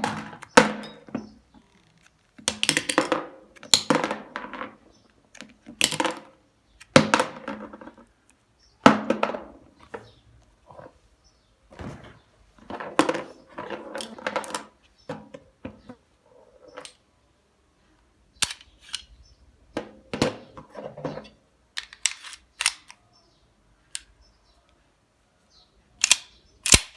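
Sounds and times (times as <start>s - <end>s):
pistol action clicking: 18.4s - 19.1s, 21.8s - 23.0s, 26.0s - 26.9s.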